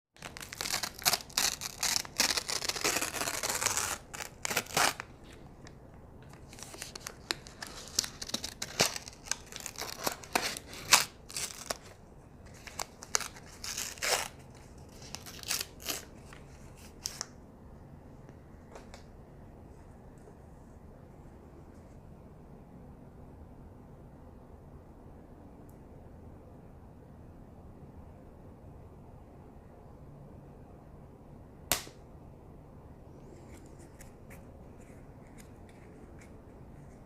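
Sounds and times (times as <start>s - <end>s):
rustling tearing noises: 0.2s - 17.3s.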